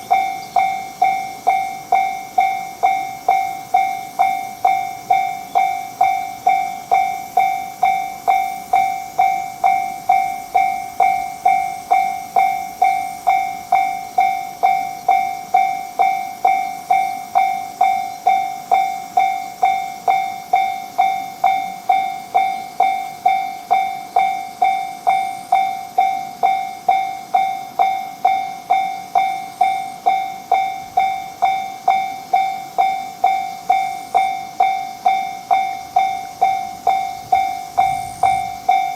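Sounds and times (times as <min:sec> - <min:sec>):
railroad crossing bell ringing: 0:00.0 - 0:38.9.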